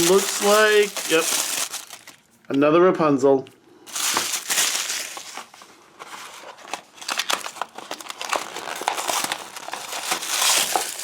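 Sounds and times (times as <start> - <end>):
plastic wrapper crinkling: 0.0 - 2.4, 3.9 - 5.6, 6.6 - 11.0.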